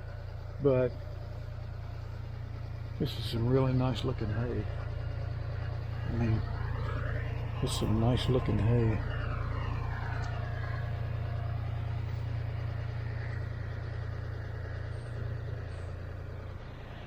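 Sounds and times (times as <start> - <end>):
faint whine: 0.0 - 17.0
tractor diesel engine idling: 0.0 - 17.0.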